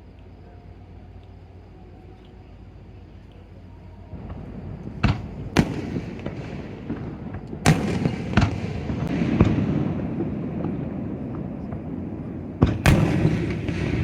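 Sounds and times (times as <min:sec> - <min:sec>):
fireworks rumble: 0:00.0 - 0:14.0
fireworks crackling: 0:02.6 - 0:14.0
fireworks sharp bangs: 0:04.1 - 0:14.0.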